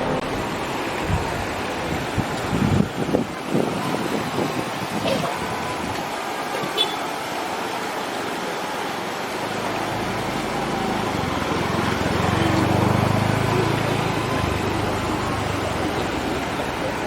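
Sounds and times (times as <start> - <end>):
engine running: 9.5 - 17.0.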